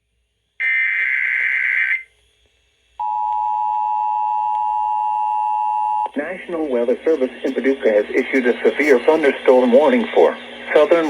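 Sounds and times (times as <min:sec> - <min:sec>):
two-tone attention signal: 0:07.1 - 0:09.4.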